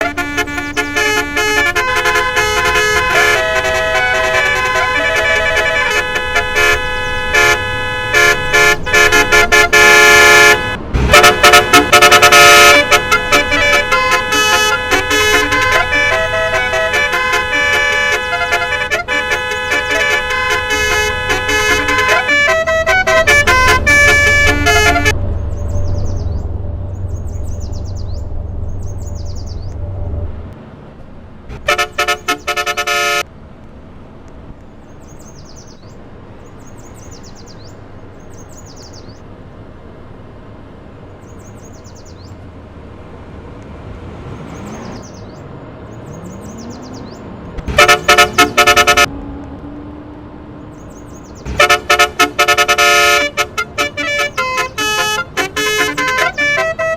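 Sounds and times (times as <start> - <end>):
electronic car horn melody: 0.0 - 25.2, 31.6 - 33.3, 47.7 - 49.1, 51.5 - 56.9
rapid stuttering horn blasts: 0.0 - 25.3, 31.5 - 33.3, 47.6 - 49.1, 51.4 - 56.9
low engine hum: 0.0 - 56.9.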